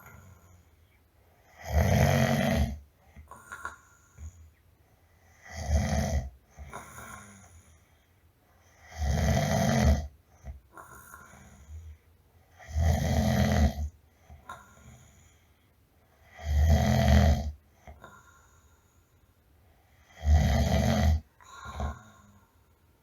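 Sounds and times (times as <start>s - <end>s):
person snoring: 1.5s - 4.4s, 5.4s - 7.5s, 8.8s - 10.1s, 12.6s - 13.9s, 16.2s - 18.5s, 20.0s - 22.6s.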